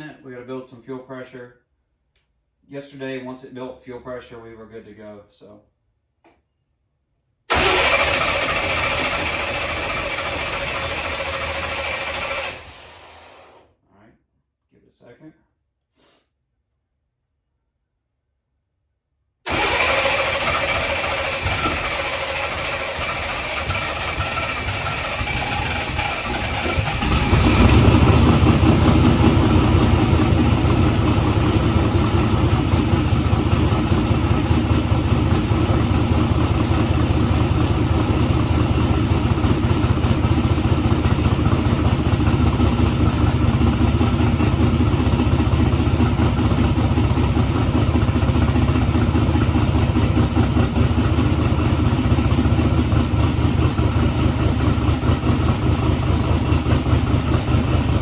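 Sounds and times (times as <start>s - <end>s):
v eight engine starting and idling: 7.5s - 13.7s, 19.5s - 58.0s.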